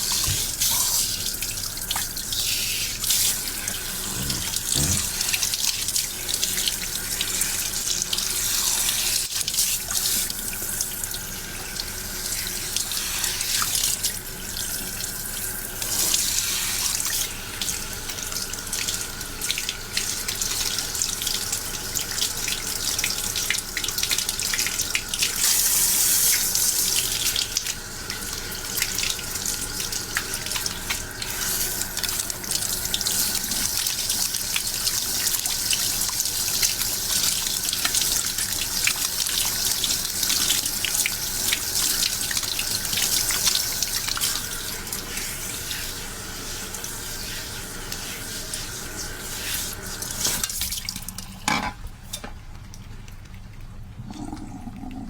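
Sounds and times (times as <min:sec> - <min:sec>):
tap water splashing into basin: 0:00.0 - 0:02.3, 0:49.4 - 0:53.7.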